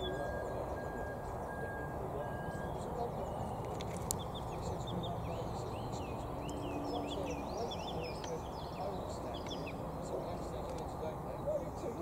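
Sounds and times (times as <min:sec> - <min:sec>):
small birds chirping: 0:00.0 - 0:12.0
steady low background noise: 0:00.0 - 0:12.0.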